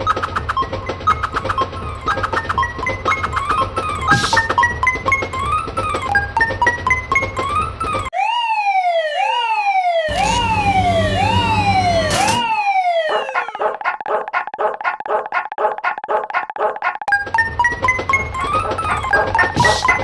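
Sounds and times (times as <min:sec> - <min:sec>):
falling siren-like alarm tone: 0:07.1 - 0:13.7.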